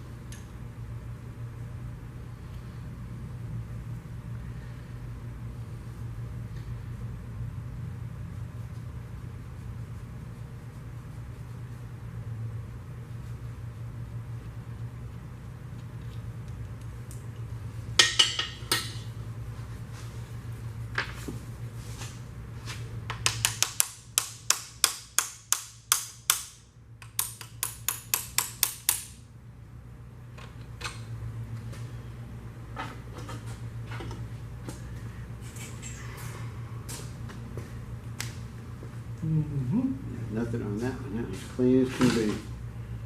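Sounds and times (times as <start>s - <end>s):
steady low hum: 0.0s - 43.0s
hammer tapping on metal: 18.0s - 19.1s.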